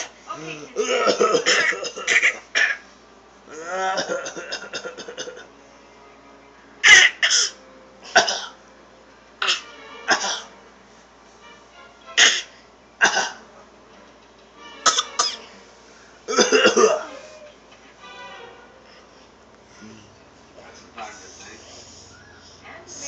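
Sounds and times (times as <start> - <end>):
person coughing: 0.8 - 2.8, 16.3 - 17.1.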